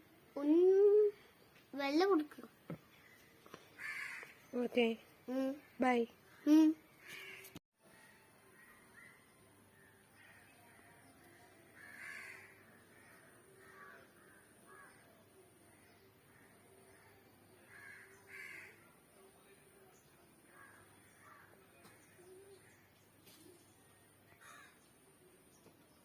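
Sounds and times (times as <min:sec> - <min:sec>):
faint crow caws: 0:03.5 - 0:04.5, 0:07.0 - 0:09.2, 0:10.1 - 0:18.9, 0:20.5 - 0:22.9, 0:24.3 - 0:24.9.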